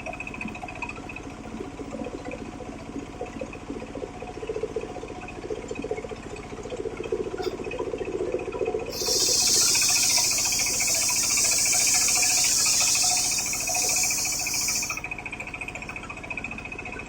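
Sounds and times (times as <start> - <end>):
machine whine and hum: 8.9 - 15.0.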